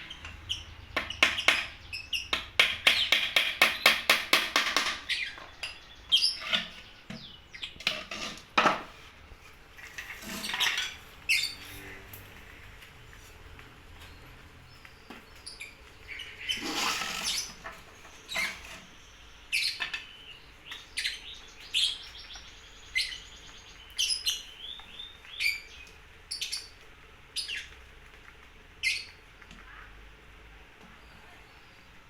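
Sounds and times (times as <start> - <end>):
small songbird chirping: 5.0 - 7.8, 13.9 - 27.8, 28.8 - 29.8.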